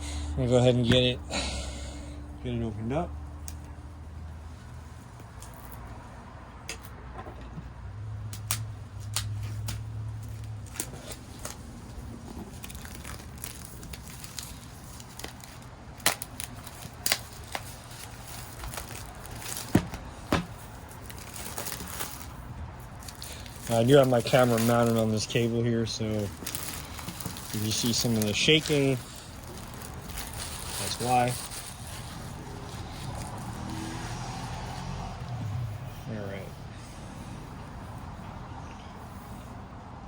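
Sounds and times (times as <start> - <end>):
clicks and snaps: 8.3 - 9.8
packaging crinkling and rustling: 9.0 - 33.8.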